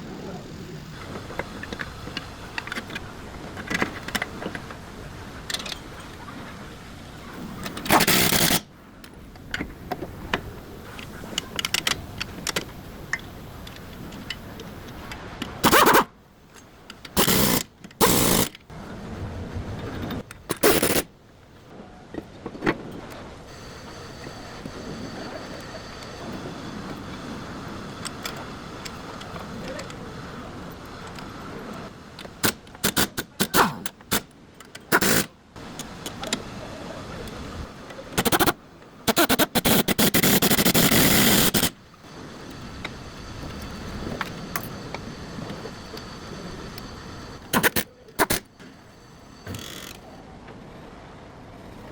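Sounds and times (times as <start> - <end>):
compressed-air tool bursts: 7.8 - 8.7, 15.6 - 16.1, 17.1 - 18.6, 20.5 - 21.1, 32.4 - 34.3, 34.9 - 35.3, 38.2 - 41.8, 47.5 - 48.5, 49.4 - 50.0.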